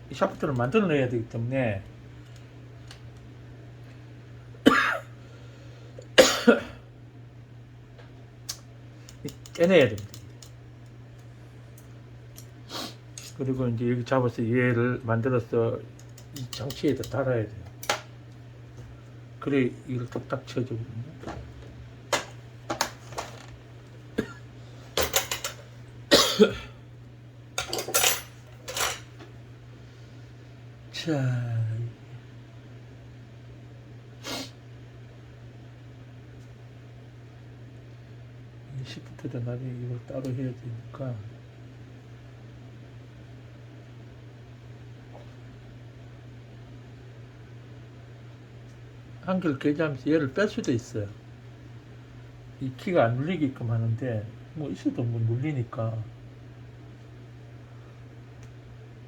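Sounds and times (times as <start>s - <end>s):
low steady hum: 0.0s - 59.0s
person coughing: 4.6s - 5.2s, 6.2s - 6.9s, 24.2s - 24.5s, 26.1s - 26.8s
metal clicks of typewriter parts: 9.1s - 10.5s.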